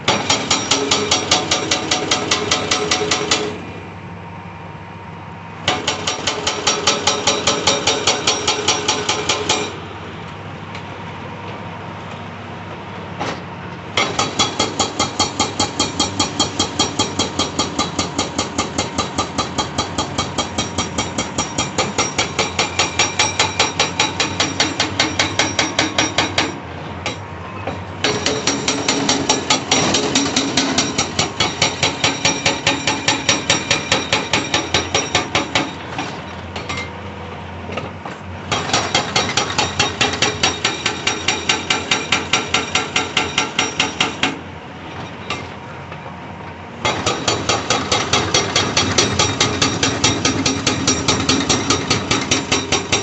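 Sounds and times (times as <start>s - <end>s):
hydraulic breaker hammering rock: 0.0s - 3.7s, 5.6s - 9.9s, 14.0s - 27.2s, 28.0s - 36.9s, 38.5s - 44.4s, 46.8s - 53.0s
diesel engine running: 0.0s - 40.4s.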